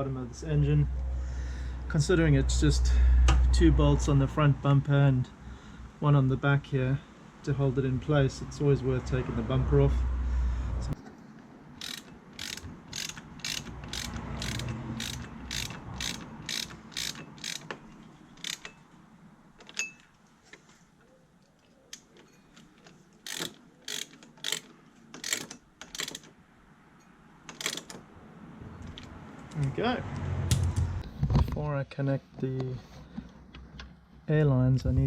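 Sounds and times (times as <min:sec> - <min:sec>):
ratchet wrench clicking: 0:11.8 - 0:18.8, 0:23.2 - 0:26.3, 0:27.5 - 0:28.0.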